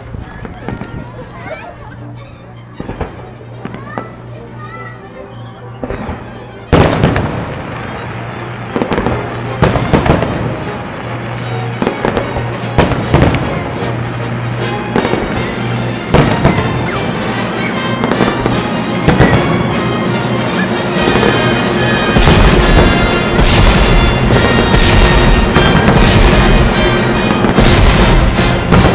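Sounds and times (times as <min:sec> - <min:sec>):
fireworks crackling: 0:00.0 - 0:04.6, 0:05.8 - 0:28.9
fireworks bangs: 0:02.8 - 0:04.2, 0:05.8 - 0:28.9.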